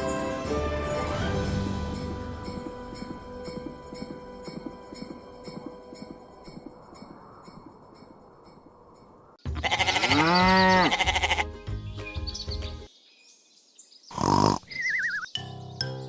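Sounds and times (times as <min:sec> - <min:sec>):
music: 0:00.0 - 0:06.7, 0:09.4 - 0:12.9, 0:15.3 - 0:16.0
quavering bleat-like call: 0:09.5 - 0:11.5, 0:14.1 - 0:14.6.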